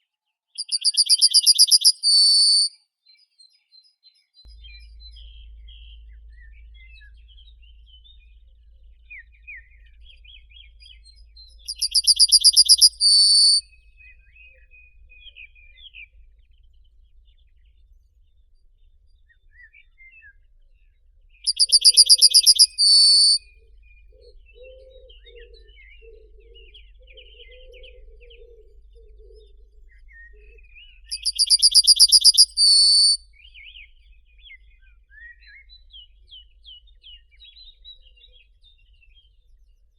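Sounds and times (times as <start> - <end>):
bird rapid trill: 0.6 - 2.7, 11.7 - 13.6, 21.5 - 23.4, 31.1 - 33.2
faint bird chirps: 0.6 - 39.9
faint low warbling call: 4.5 - 16.9, 21.5 - 34.6.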